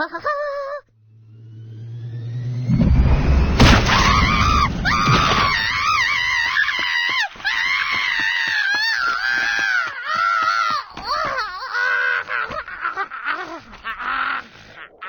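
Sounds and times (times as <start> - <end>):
loud rumbling crash: 1.2 - 6.9.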